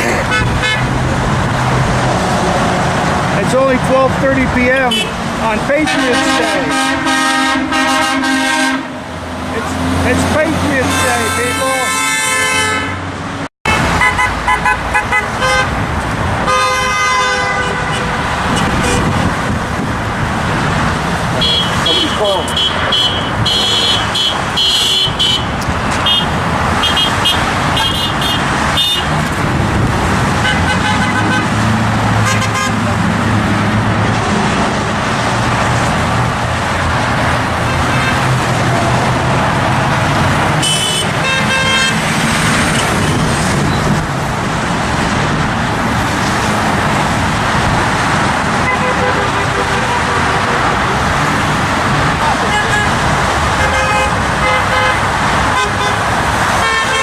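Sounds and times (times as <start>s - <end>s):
highway traffic passing: 0.0s - 57.0s
vehicle horns honking: 0.1s - 0.9s, 4.8s - 9.0s, 10.3s - 13.1s, 13.7s - 15.8s, 16.4s - 19.3s, 21.4s - 29.2s, 30.4s - 31.6s, 32.2s - 32.9s, 37.7s - 38.4s, 40.6s - 43.2s, 48.6s - 50.8s, 52.2s - 57.0s.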